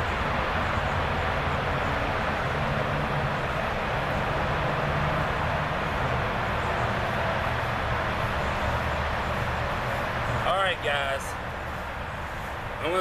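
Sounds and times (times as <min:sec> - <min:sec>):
low engine hum: 0:00.0 - 0:13.0.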